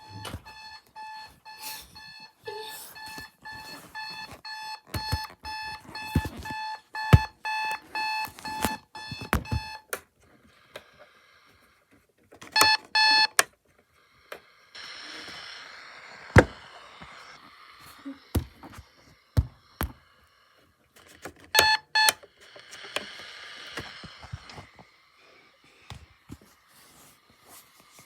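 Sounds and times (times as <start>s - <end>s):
electronic alarm beeping: 0.0s - 9.9s, 12.6s - 13.4s, 21.5s - 24.6s
hiss-like noise: 14.6s - 19.4s.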